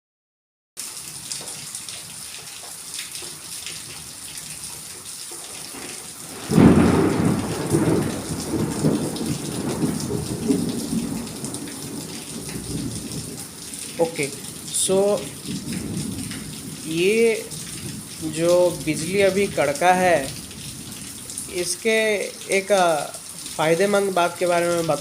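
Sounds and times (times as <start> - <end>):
rain pattering: 0.8 - 25.0
thunder rumbling: 5.8 - 21.8.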